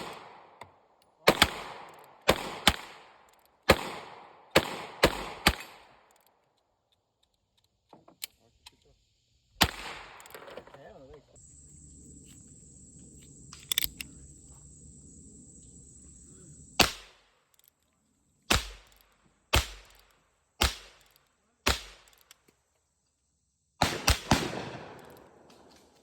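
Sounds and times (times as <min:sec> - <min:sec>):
light clicks: 0:12.2 - 0:14.2.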